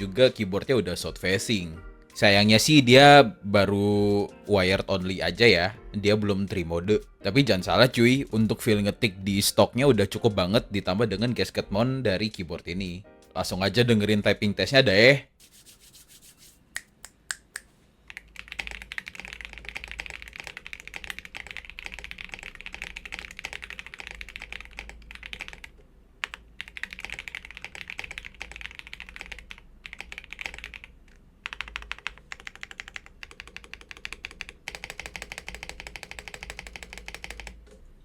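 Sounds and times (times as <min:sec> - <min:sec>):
mechanical keyboard typing: 0:18.1 - 0:37.8.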